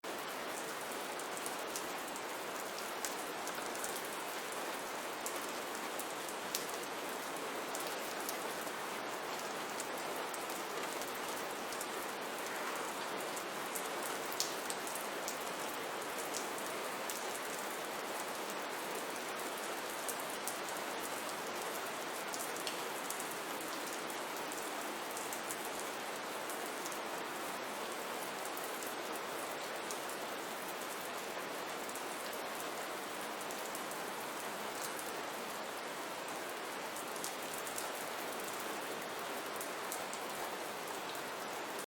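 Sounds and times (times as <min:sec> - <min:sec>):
steady rain falling: 0:00.0 - 0:41.9
rain drop ticks: 0:14.4 - 0:15.0.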